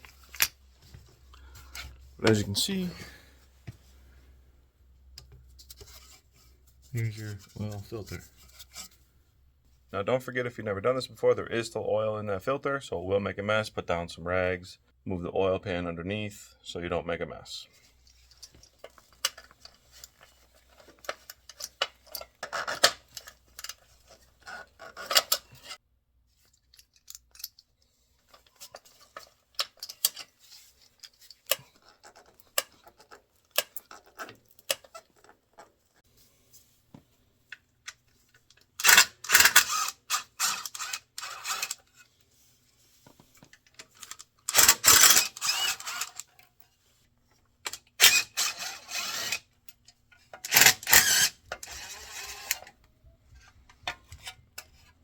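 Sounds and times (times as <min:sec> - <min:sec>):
small metallic clicks and knocks: 0:26.4 - 0:36.0.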